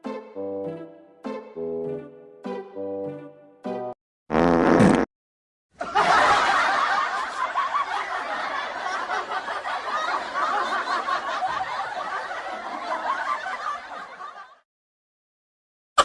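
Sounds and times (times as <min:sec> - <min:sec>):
crowd laughing: 0:05.8 - 0:14.6.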